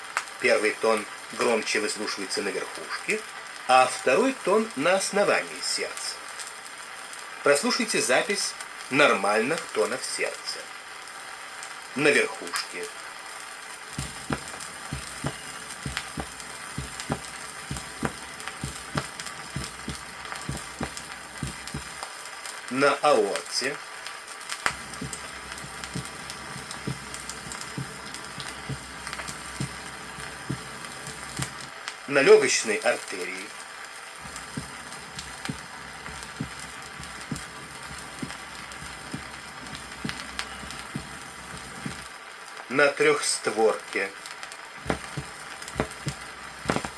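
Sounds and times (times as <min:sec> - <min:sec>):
vinyl record surface noise: 0:13.7 - 0:22.5, 0:24.5 - 0:42.2, 0:44.3 - 0:46.9
heartbeat thumps: 0:13.9 - 0:22.0, 0:24.7 - 0:31.7, 0:34.2 - 0:42.1, 0:44.8 - 0:46.9.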